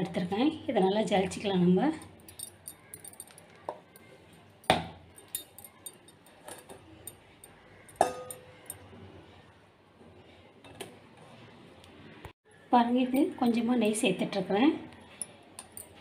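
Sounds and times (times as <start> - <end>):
metal clinking against bowl: 2.0 - 8.9, 15.1 - 16.0.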